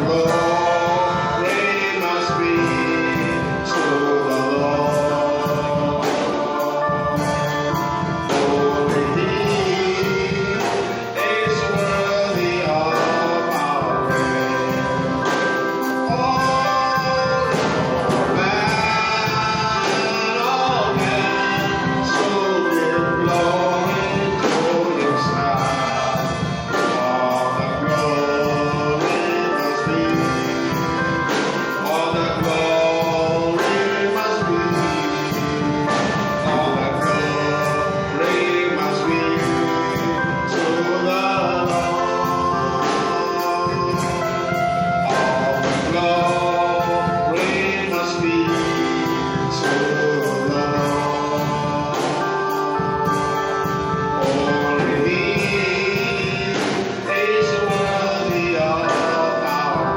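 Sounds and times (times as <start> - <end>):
live instrumental accompaniment: 0.0 - 59.9
voices singing together: 0.0 - 59.9.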